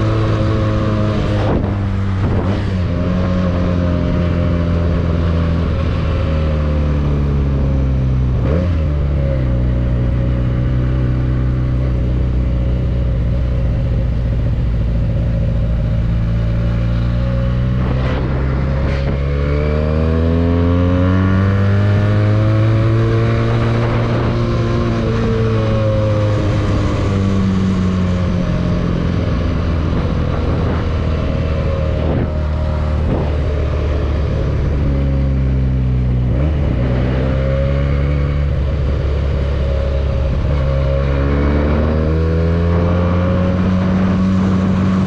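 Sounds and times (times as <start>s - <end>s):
motorcycle engine cruising: 0.0s - 45.0s.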